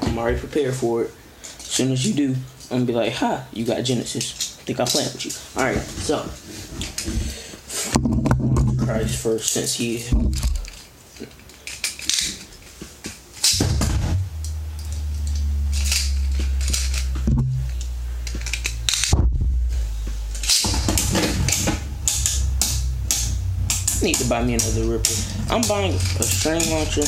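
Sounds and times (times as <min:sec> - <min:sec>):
spinning top whirring hum: 0:13.4 - 0:27.0
spinning top rattling clicks: 0:14.4 - 0:19.1, 0:20.3 - 0:27.0.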